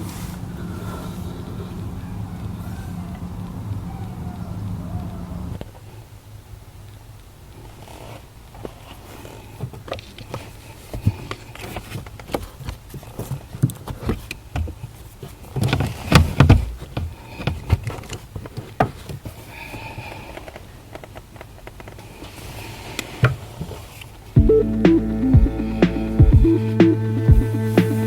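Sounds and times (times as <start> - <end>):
steady low hum: 24.4 - 28.0.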